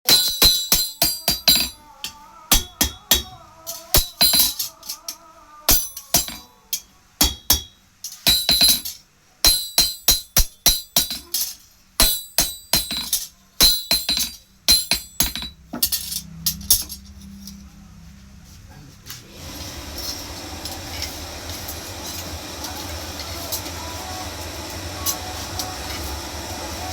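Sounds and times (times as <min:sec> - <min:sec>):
hammer striking steel on anvil: 0:00.1 - 0:17.0.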